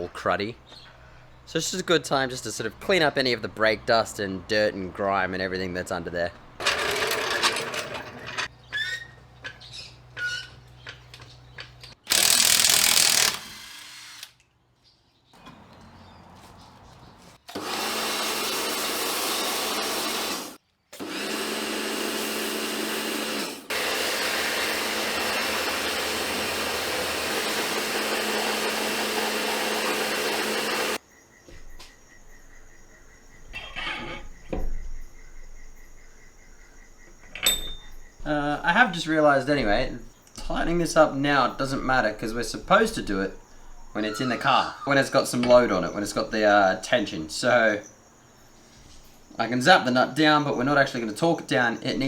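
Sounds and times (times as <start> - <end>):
power tool running: 6.6 - 8.5, 12.0 - 14.4, 17.5 - 31.0.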